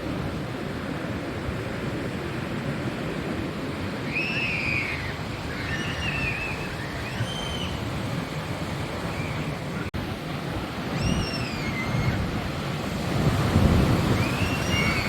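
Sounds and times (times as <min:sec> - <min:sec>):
ocean surf washing on shore: 0:00.0 - 0:15.0
bird calling: 0:04.1 - 0:07.8, 0:14.1 - 0:15.0.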